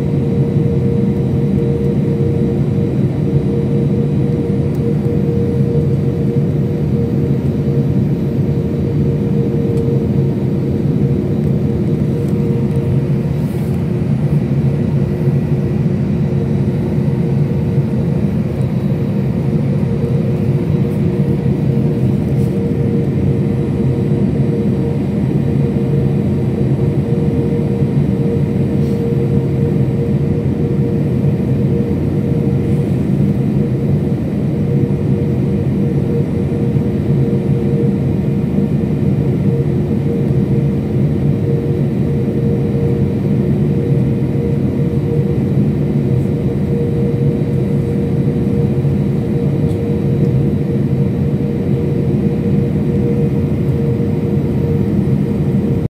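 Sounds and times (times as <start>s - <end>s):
constant low hum: 0.0s - 55.9s
jet engines droning: 0.0s - 55.9s
rushing air in cabin: 9.4s - 25.7s, 28.2s - 29.8s, 31.7s - 34.9s.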